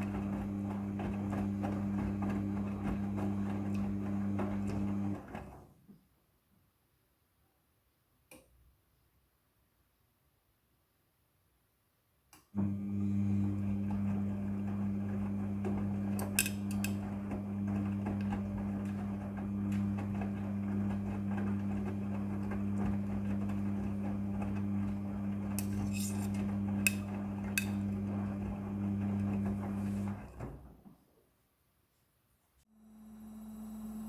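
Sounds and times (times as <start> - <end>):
washing machine motor hum: 0.0 - 5.7, 12.6 - 30.9, 32.8 - 34.0.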